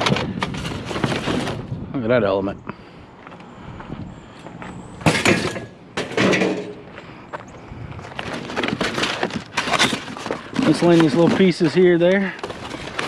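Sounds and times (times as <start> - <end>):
scrap metal clattering: 5.0 - 6.9, 8.2 - 13.0.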